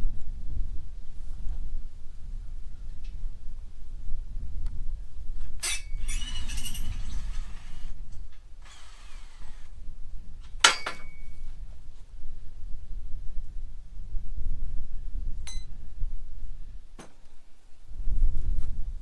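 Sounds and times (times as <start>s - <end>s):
metal parts rattling: 5.6s - 8.0s, 8.7s - 9.7s, 10.6s - 11.5s.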